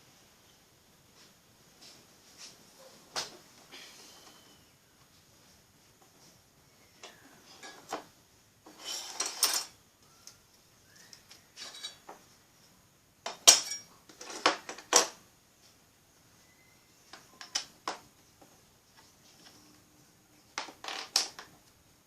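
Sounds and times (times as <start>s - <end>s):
small metal objects clinking: 13.4s - 14.6s.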